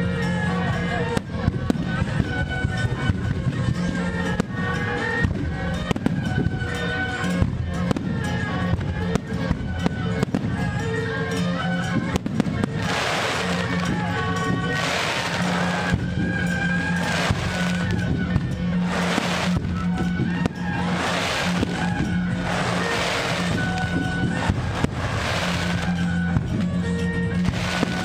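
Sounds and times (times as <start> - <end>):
steady music: 0.0 - 28.0
fireworks bangs: 11.9 - 28.0.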